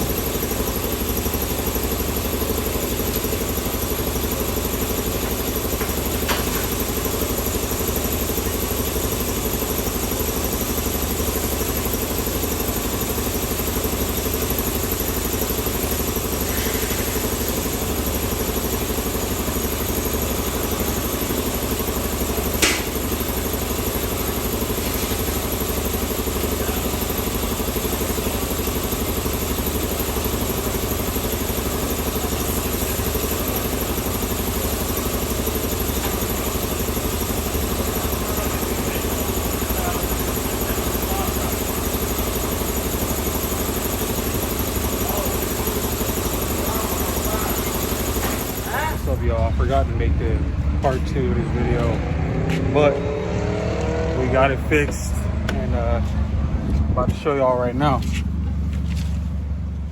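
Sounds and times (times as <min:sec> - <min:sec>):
engine idling hum: 0:00.0 - 0:59.9.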